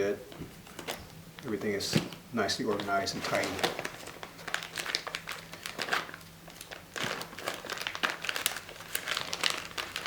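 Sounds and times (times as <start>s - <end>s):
plastic bags crinkling: 2.6s - 10.0s.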